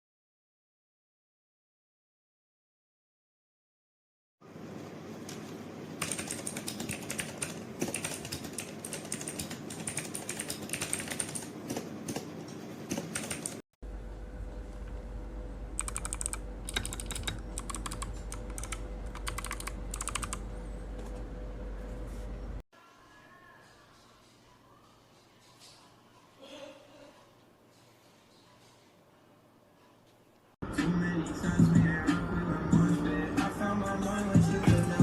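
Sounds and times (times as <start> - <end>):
mechanical keyboard typing: 6.0 - 12.2, 12.9 - 13.6, 15.8 - 20.4
steady low hum: 13.8 - 22.6.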